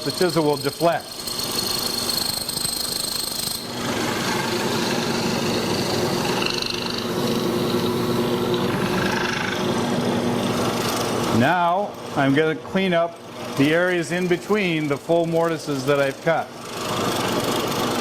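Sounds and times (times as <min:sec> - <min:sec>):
chisel boring into wood: 0:00.0 - 0:11.4
mortiser motor humming: 0:00.0 - 0:11.4.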